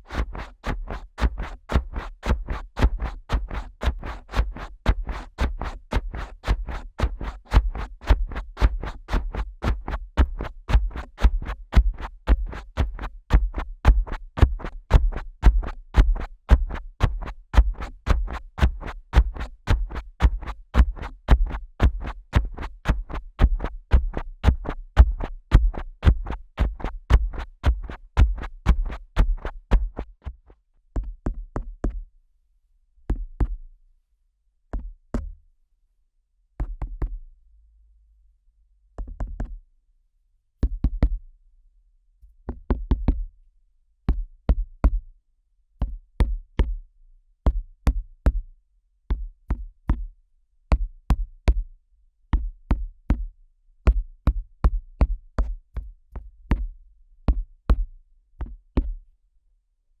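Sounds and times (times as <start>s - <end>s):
fingers tapping on microphone: 6.6s - 30.4s.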